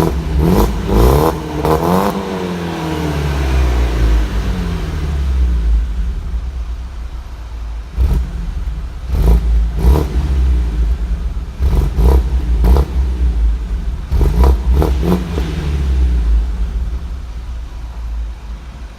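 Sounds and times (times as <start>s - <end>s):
car engine revving: 0.0s - 18.9s.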